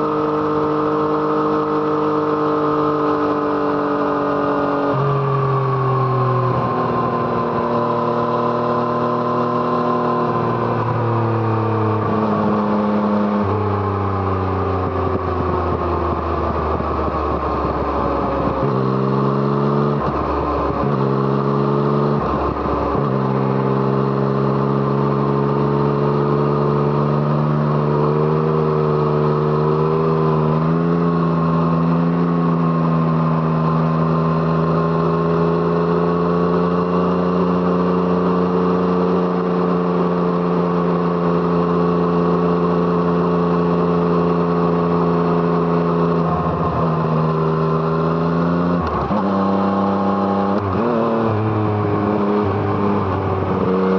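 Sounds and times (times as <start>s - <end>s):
motorcycle engine while riding: 0.0s - 53.9s.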